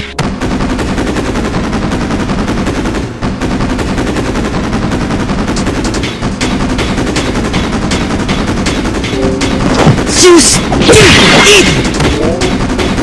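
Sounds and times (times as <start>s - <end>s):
rapid machine-gun-like rattle: 0.2s - 13.0s.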